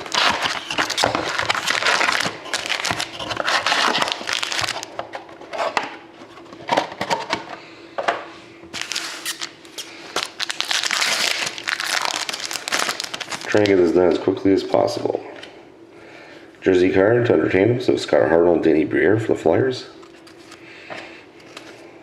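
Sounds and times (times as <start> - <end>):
plastic wrapping tearing and crinkling: 0.0 - 4.9, 8.7 - 13.8.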